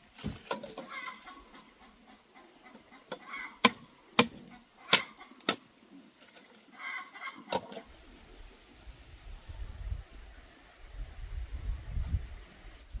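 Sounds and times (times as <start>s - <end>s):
chickens clucking: 0.5s - 8.0s.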